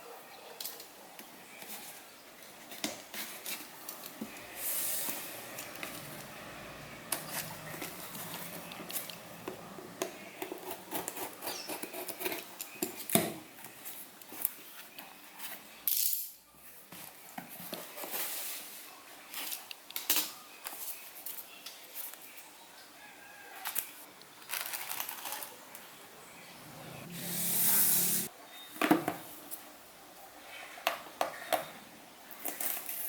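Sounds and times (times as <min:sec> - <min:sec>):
packaging clicks and rustles: 0:23.6 - 0:25.6.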